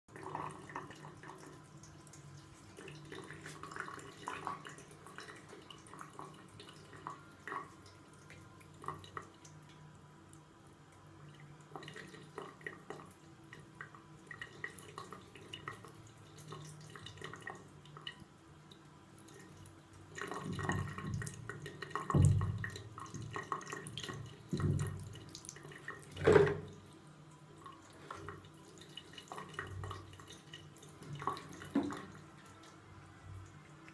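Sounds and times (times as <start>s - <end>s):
tap water running into sink: 0.1s - 33.9s
water drips: 0.1s - 33.9s
cat splashing in water: 20.2s - 26.9s.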